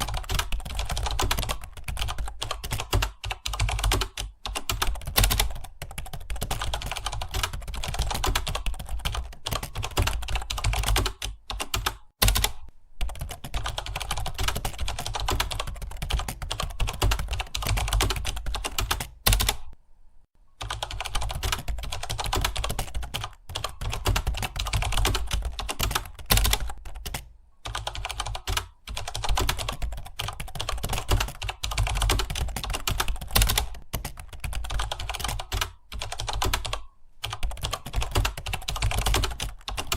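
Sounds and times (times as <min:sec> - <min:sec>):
fast typing on a keyboard: 0:00.0 - 0:19.8, 0:20.6 - 0:39.9.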